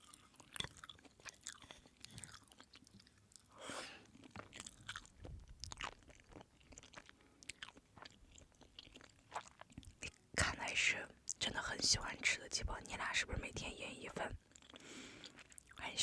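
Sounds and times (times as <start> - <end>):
person chewing food: 0.0 - 10.3, 14.3 - 15.8.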